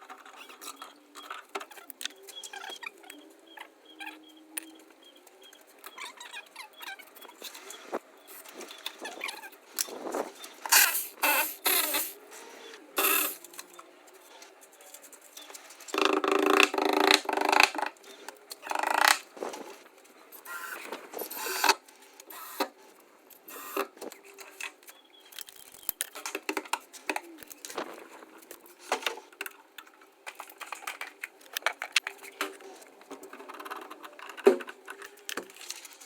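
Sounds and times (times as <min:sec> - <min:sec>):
hand tools and metal fittings clicking: 0:10.6 - 0:12.2, 0:13.0 - 0:13.7, 0:15.0 - 0:19.3, 0:20.4 - 0:22.7.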